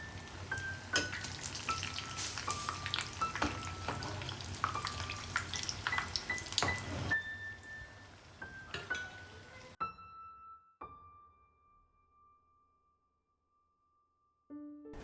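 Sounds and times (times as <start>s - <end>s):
food sizzling in a pan: 0.0s - 9.8s.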